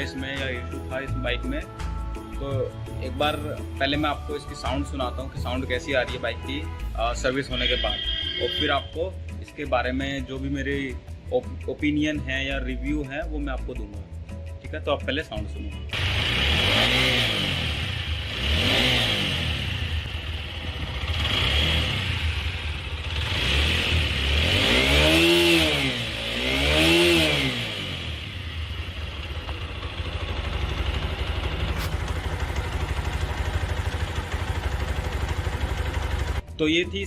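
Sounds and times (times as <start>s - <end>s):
motorcycle engine revving and idling: 7.2s - 8.9s, 15.9s - 36.5s.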